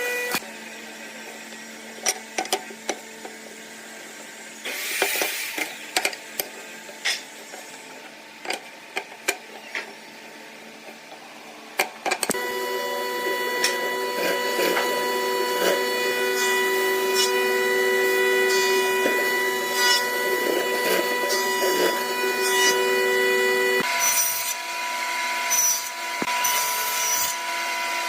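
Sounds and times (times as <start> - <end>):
steady multi-tone hum: 5.3 - 24.6.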